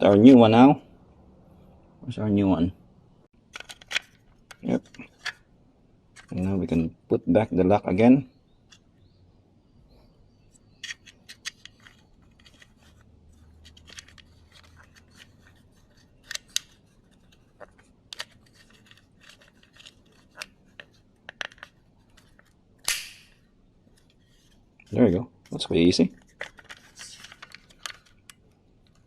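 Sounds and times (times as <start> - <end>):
small metal clicks and scraping: 10.5 - 24.6, 26.2 - 29.0.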